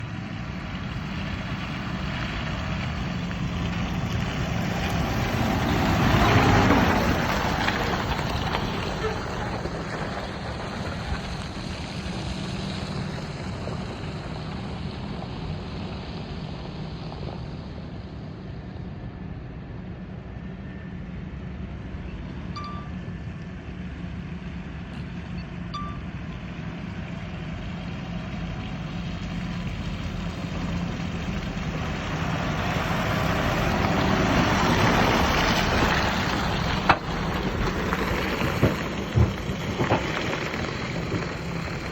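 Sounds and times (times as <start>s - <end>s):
farm machinery engine droning: 0.0s - 41.9s
short beeps: 22.5s - 23.1s, 25.3s - 26.2s.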